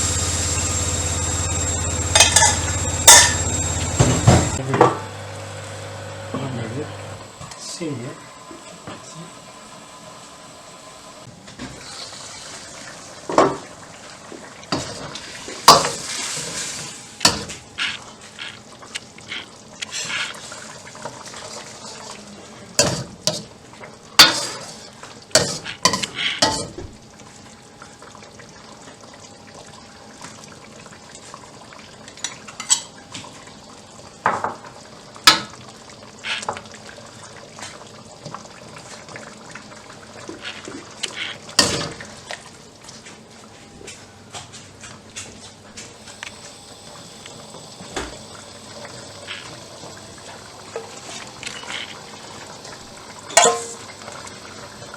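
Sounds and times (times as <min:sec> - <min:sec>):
cooking hiss: 0:00.0 - 0:26.9, 0:45.8 - 0:54.9.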